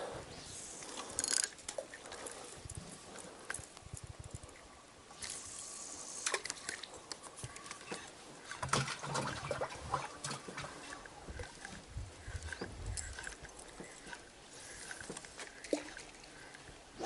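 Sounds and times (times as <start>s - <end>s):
clicks and knocks of gear: 1.1s - 1.8s
water sloshing: 6.2s - 17.0s.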